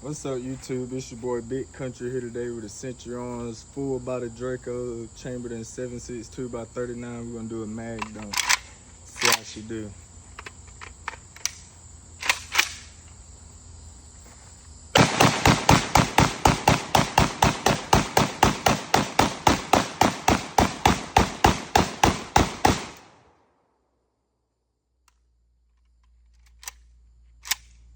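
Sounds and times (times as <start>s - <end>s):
sharp gun clicks: 8.0s - 9.5s, 10.4s - 12.9s, 27.4s - 27.8s
rapid pistol gunshots: 15.0s - 23.3s.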